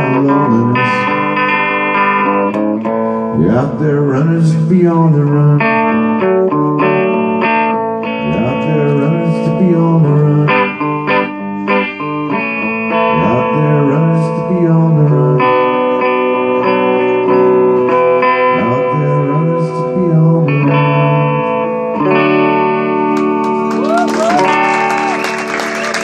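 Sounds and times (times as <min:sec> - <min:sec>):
guitar strumming chords: 0:00.0 - 0:26.0
audience applauding: 0:23.2 - 0:26.0.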